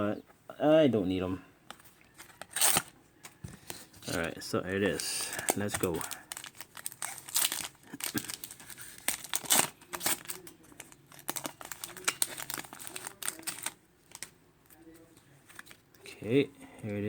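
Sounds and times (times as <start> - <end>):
foil wrapper tearing and crinkling: 2.2 - 2.9, 5.2 - 14.3.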